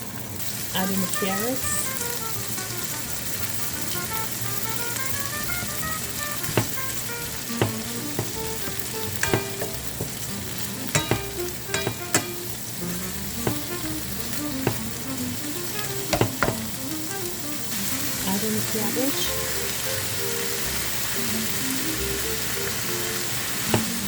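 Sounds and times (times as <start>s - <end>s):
vegetables sizzling in hot oil: 0.0s - 24.0s
spatula knocking against pan: 5.9s - 12.6s, 13.4s - 15.1s, 15.8s - 16.8s, 23.7s - 24.0s.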